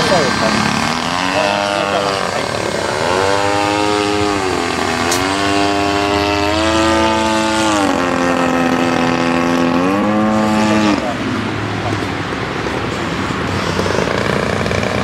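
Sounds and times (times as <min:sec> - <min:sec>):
small high-revving engine: 0:00.0 - 0:15.0.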